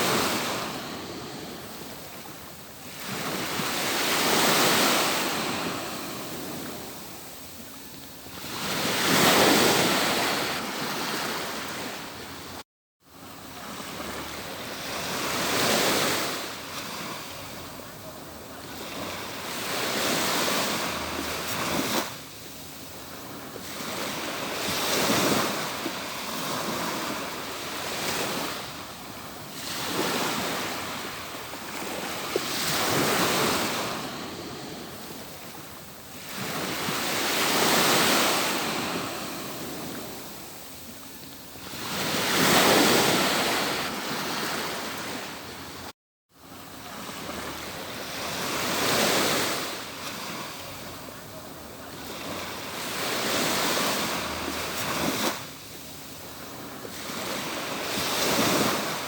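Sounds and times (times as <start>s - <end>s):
surf waves breaking on beach: 0.0s - 59.0s.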